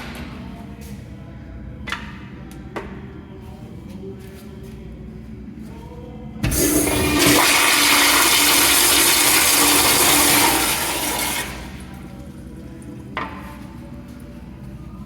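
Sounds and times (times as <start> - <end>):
toilet flushing: 6.4 - 12.1.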